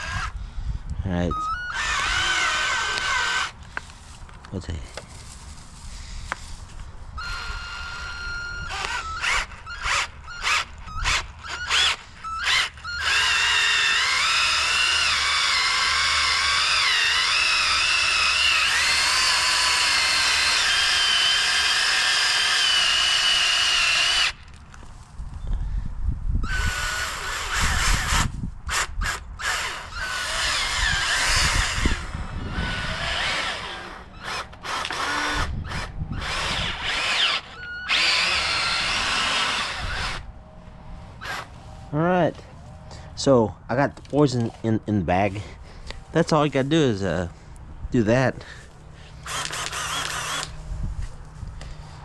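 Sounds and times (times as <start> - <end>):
power drill auger into soil: 0.0 - 0.4, 1.2 - 4.2, 4.8 - 24.6, 26.4 - 40.3, 41.2 - 41.6, 48.4 - 51.9.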